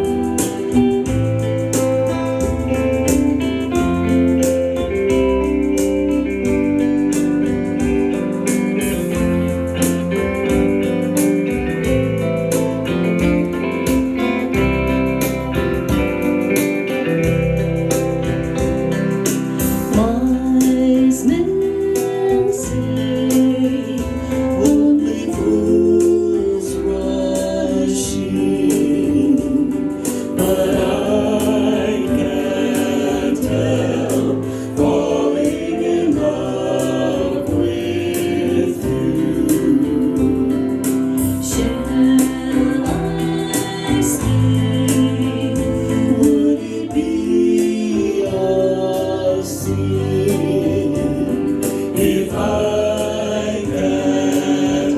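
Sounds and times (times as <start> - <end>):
band playing: 0.0 - 54.9
gospel choir singing: 0.0 - 54.9
steady beat: 29.5 - 46.5.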